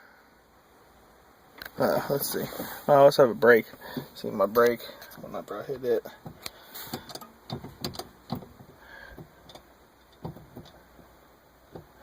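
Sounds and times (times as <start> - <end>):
light clicks and knocks: 6.1 - 11.1, 11.7 - 12.0.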